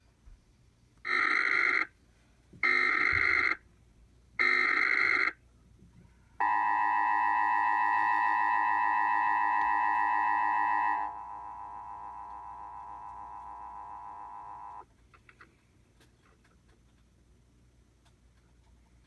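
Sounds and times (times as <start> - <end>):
electronic data bursts: 6.4 - 14.8
two-tone attention signal: 6.4 - 14.8.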